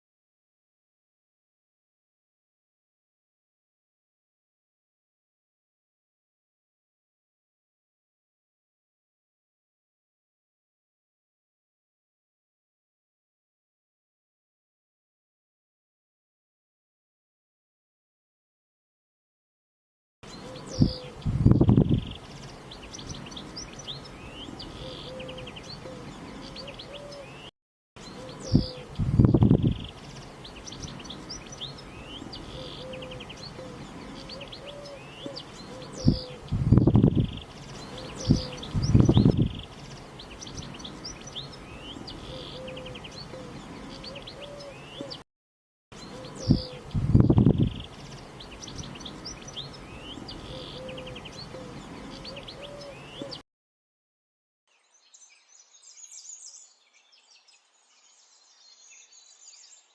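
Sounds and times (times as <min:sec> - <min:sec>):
small birds chirping: 0:20.2 - 0:45.2, 0:46.0 - 0:53.4, 0:54.7 - 0:59.9.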